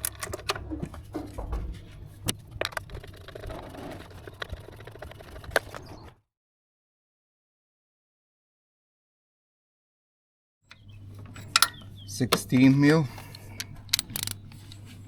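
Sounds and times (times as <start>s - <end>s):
steady low hum: 0.0s - 5.6s, 10.7s - 15.0s
tools clicking and scraping metal: 10.7s - 14.9s.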